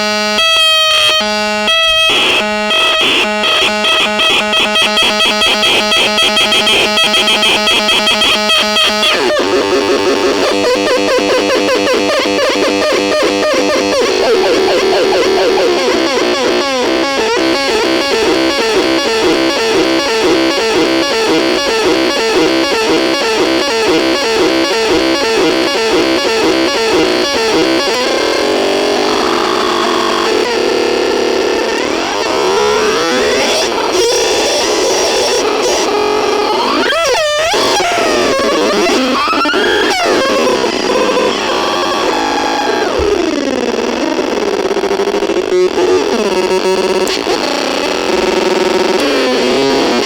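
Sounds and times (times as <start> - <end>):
wavering electronic tone: 2.2 - 34.2
repeating synthetic tone pattern: 2.6 - 30.5.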